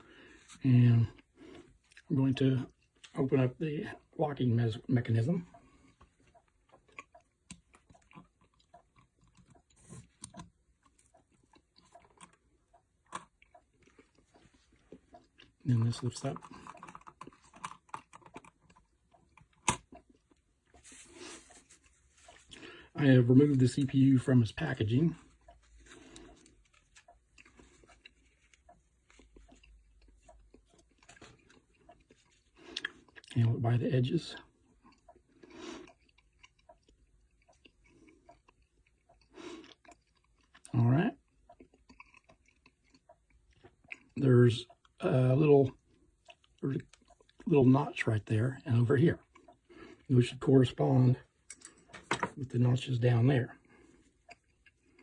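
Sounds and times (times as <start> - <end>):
small metal clicks and crinkles: 13.1 - 22.5, 25.3 - 32.5.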